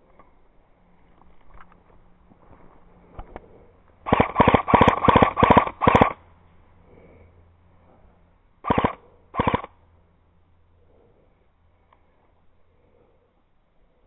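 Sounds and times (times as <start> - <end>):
airsoft gun full-auto bursts: 4.0 - 6.2, 8.6 - 9.8.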